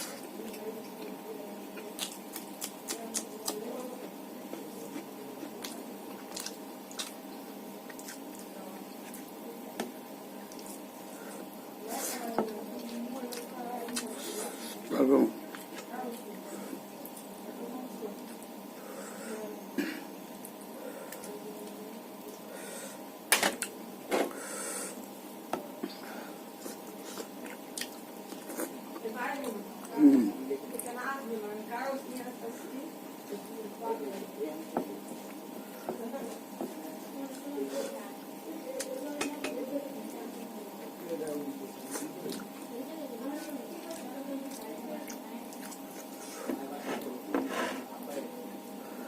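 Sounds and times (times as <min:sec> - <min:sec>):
person chewing and smacking: 0:00.0 - 0:10.8, 0:12.4 - 0:16.4, 0:26.6 - 0:29.1, 0:41.7 - 0:42.7, 0:43.4 - 0:46.6
steady hum: 0:00.0 - 0:49.0.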